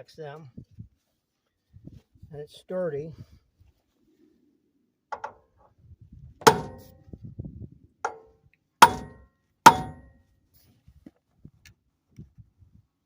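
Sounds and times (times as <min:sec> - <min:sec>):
hammer striking metal puller: 0:06.4 - 0:06.9, 0:08.1 - 0:10.1.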